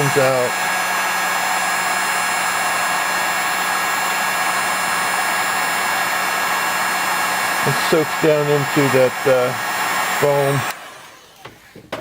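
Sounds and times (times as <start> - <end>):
hot-air blower running: 0.0 - 12.0.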